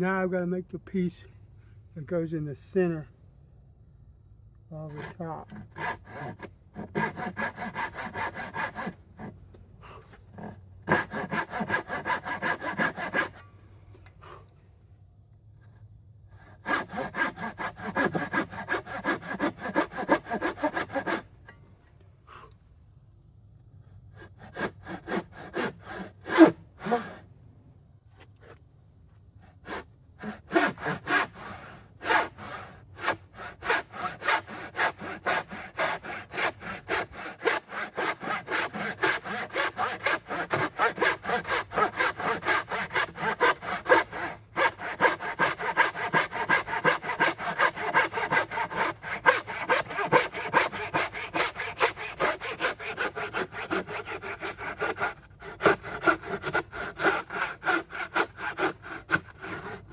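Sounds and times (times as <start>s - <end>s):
hand saw cutting board: 4.9s - 9.4s, 10.1s - 13.4s, 16.6s - 21.3s, 24.4s - 27.2s, 29.6s - 59.9s.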